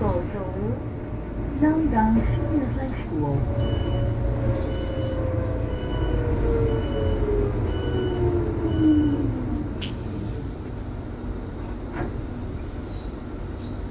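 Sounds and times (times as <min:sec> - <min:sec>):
low running rumble: 0:00.0 - 0:10.6.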